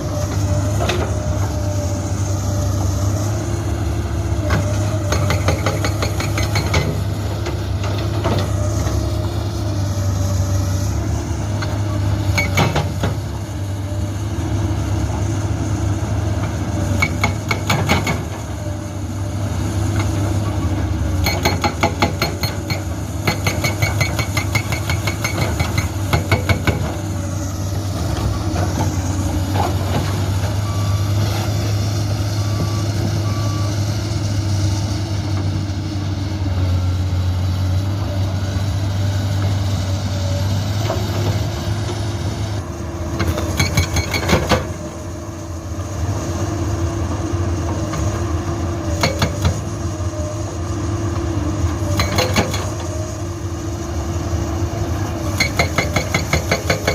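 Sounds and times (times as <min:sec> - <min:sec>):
excavator diesel engine running: 0:00.0 - 0:56.9
hydraulic breaker hammering rock: 0:04.5 - 0:07.1, 0:12.3 - 0:13.2, 0:16.9 - 0:18.5, 0:21.2 - 0:27.1, 0:43.2 - 0:44.8, 0:48.9 - 0:49.8, 0:51.8 - 0:52.9, 0:55.2 - 0:56.9.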